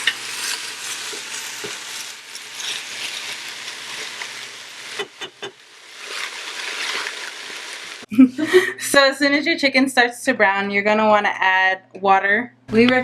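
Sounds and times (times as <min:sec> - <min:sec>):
food sizzling in a pot: 0:00.0 - 0:08.1.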